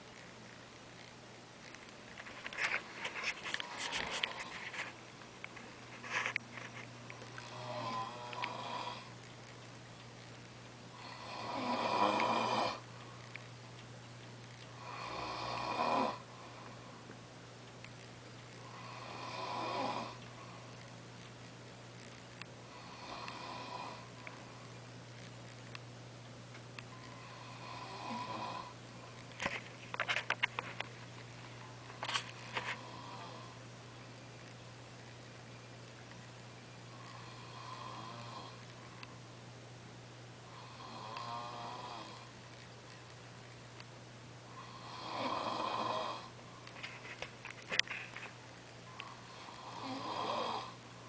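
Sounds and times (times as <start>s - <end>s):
crackling clicking noises: 0.0s - 10.9s, 12.2s - 15.2s, 16.6s - 18.8s, 19.4s - 39.6s, 40.9s - 44.4s, 45.1s - 50.1s
person snoring: 7.3s - 9.2s, 11.0s - 12.9s, 14.8s - 16.8s, 18.6s - 20.2s, 22.7s - 24.1s, 27.0s - 28.8s, 32.8s - 33.6s, 37.0s - 38.6s, 40.5s - 42.3s, 44.5s - 46.3s, 49.0s - 50.8s.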